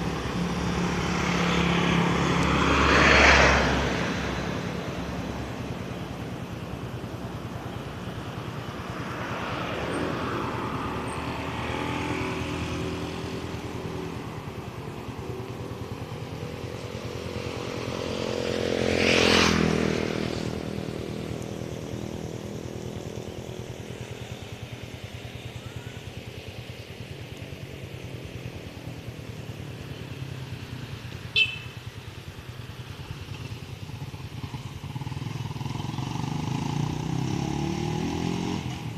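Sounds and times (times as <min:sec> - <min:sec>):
steady engine hum: 0:00.0 - 0:38.9
vehicle engine passing by: 0:00.0 - 0:38.9.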